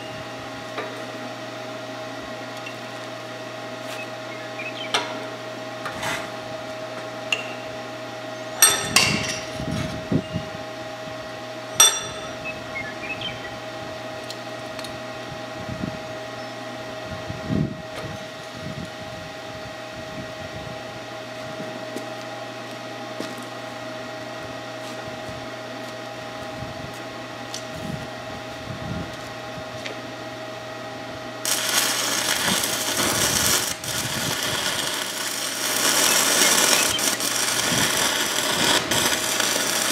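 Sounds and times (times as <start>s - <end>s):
welder humming: 0.0s - 15.3s, 31.2s - 39.9s
welding arc crackling: 31.4s - 39.9s.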